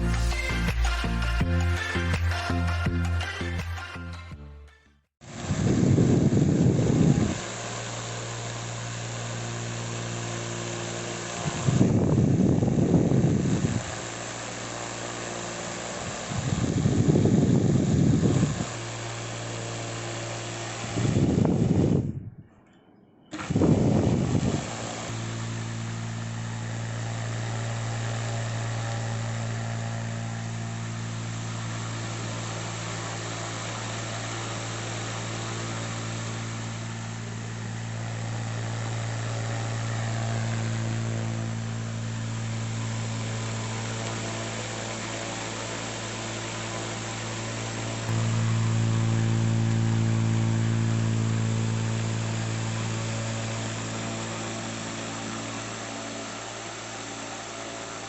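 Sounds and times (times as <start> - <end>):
fan motor humming: 0.0 - 3.8, 5.2 - 22.7, 23.3 - 58.0.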